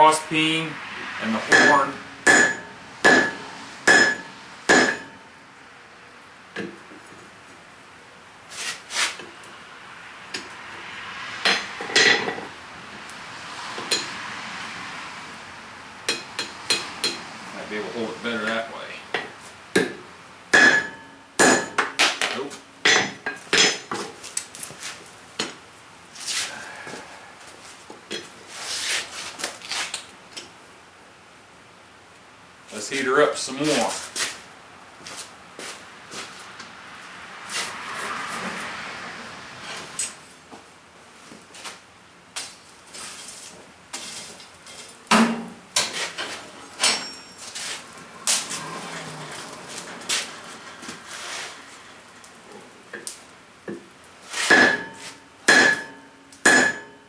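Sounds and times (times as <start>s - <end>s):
hammer knocking on anvil: 1.5s - 5.2s, 19.8s - 22.0s, 54.5s - 57.0s
metal clanks of blacksmith's tools: 1.5s - 5.2s, 44.7s - 47.5s, 54.4s - 57.0s
metallic ring: 1.5s - 5.3s, 20.6s - 21.8s, 46.8s - 47.7s, 54.5s - 57.0s
steel scraping: 45.8s - 53.1s
metal clinks: 46.8s - 47.6s.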